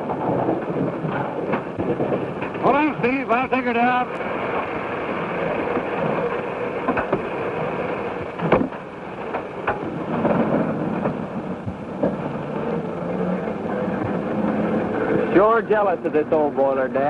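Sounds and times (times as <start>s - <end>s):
steam locomotive hissing: 0.0s - 17.0s.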